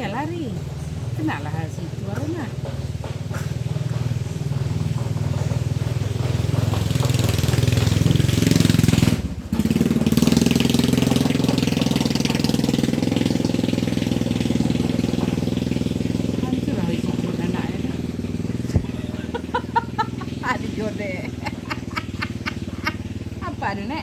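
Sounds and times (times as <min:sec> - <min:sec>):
vehicle engine running: 0:00.0 - 0:24.0.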